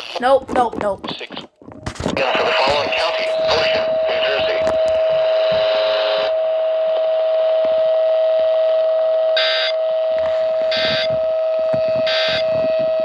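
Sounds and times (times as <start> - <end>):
short electronic beeps: 9.4 - 9.8, 10.7 - 11.2, 12.0 - 12.6
steady alert tone: 9.4 - 9.8, 10.7 - 11.2, 12.0 - 12.5.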